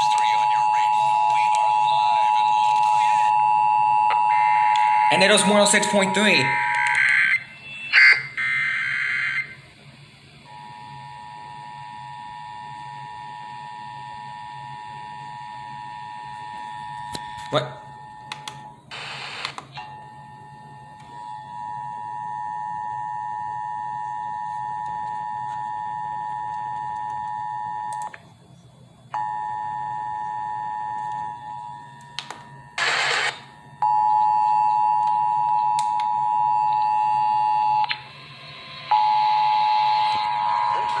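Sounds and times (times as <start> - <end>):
radio static: 0.0 - 3.4, 18.9 - 19.6, 32.8 - 33.6, 37.9 - 41.0.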